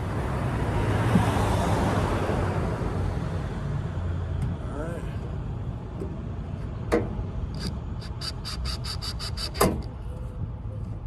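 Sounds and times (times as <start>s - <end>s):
drill clutch clicking: 7.5s - 10.0s.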